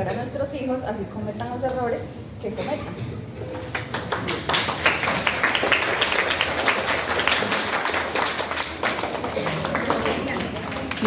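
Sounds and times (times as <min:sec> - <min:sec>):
audience applauding: 0:03.6 - 0:11.0.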